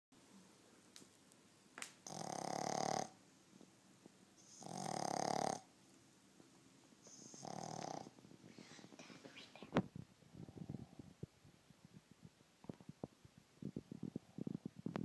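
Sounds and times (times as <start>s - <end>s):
puppy snoring: 2.0s - 3.2s, 4.4s - 5.7s, 7.0s - 8.9s.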